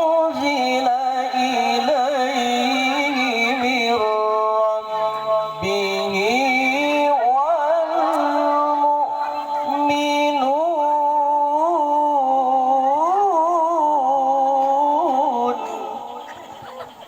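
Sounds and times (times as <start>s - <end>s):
person chanting a recitation: 0.0s - 16.8s.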